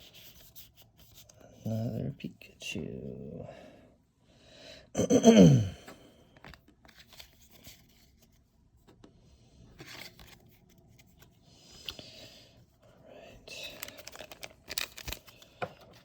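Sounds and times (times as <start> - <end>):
man groaning: 5.0 - 5.9
trading cards and packaging rustling: 6.4 - 8.5, 9.6 - 16.0.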